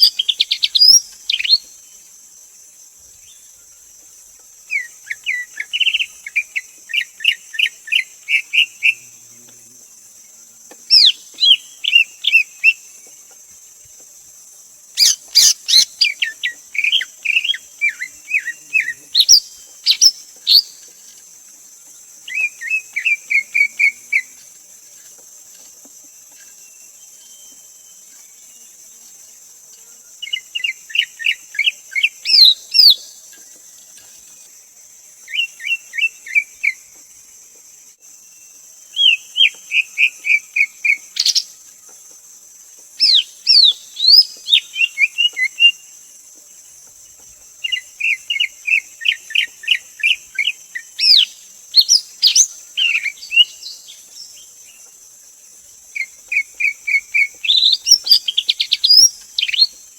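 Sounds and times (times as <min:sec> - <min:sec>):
steady high hiss: 0:00.0 - 0:59.9
bird singing chattering notes: 0:15.0 - 0:20.9, 0:47.7 - 0:54.3, 0:56.0 - 0:59.8.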